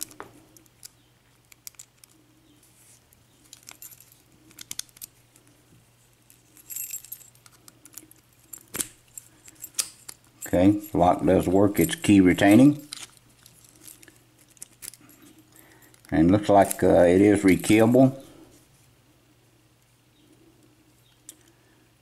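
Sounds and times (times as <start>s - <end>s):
key rattling: 3.4s - 5.2s, 6.3s - 18.0s.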